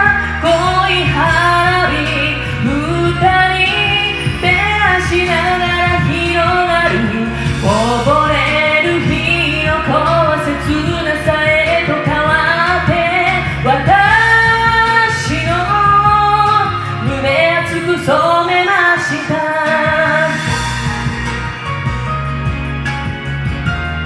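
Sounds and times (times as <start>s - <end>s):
woman singing pop ballad: 0.0s - 21.7s
pop backing track: 0.0s - 24.0s.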